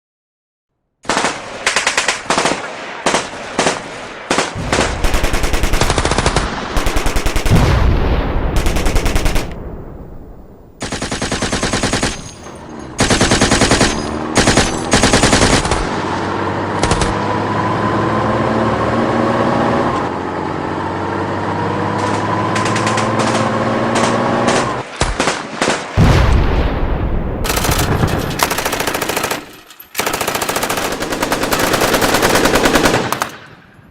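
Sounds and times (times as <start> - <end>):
machine-gun fire: 1.0 - 9.9, 10.7 - 12.4, 13.0 - 16.0, 22.5 - 26.5, 27.3 - 33.5.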